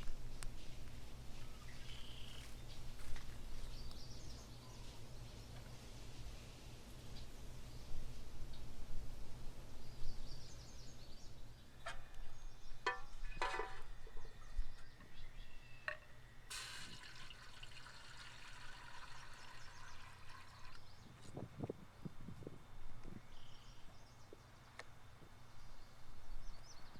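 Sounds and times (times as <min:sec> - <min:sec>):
utensils knocking and clinking: 0:12.8 - 0:14.2
liquid pouring: 0:16.5 - 0:21.0.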